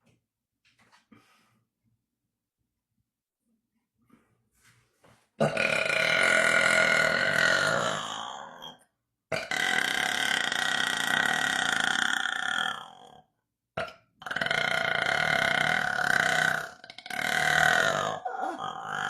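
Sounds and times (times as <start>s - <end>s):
woman belching: 5.4s - 13.1s, 13.8s - 19.0s.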